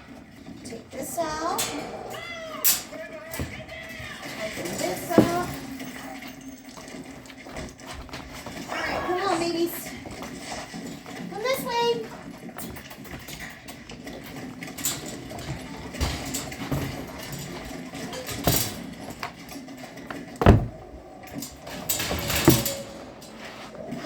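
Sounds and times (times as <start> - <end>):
knocks and bumps of handled objects: 5.1 - 5.7, 20.0 - 21.0
loud thump: 20.4 - 20.8.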